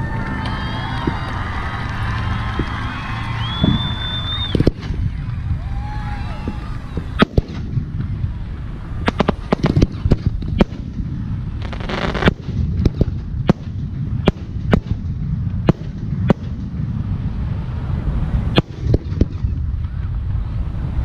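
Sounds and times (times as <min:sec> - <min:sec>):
firework hissing crackle: 0:00.0 - 0:21.0
firework shells bursting: 0:09.0 - 0:16.8.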